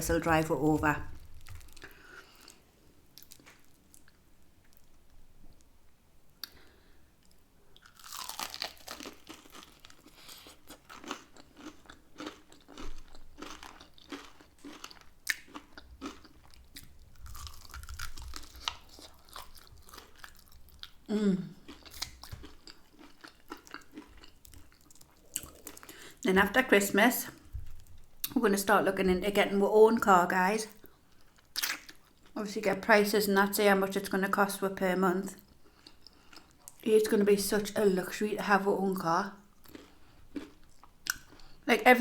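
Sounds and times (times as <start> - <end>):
chewing crunches: 7.8 - 26.2, 39.5 - 41.6.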